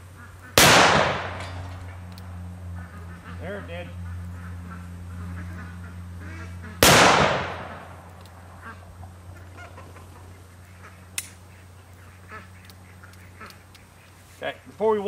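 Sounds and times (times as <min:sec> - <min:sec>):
revolver gunshot: 0:00.6 - 0:01.9, 0:06.8 - 0:08.1
sharp click: 0:11.2 - 0:11.4.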